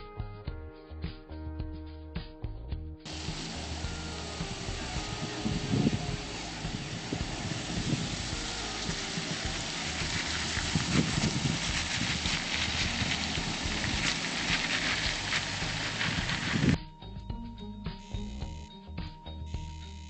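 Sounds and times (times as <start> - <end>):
vehicle rumble: 3.1 - 16.8
water splashing and churning: 3.1 - 16.8.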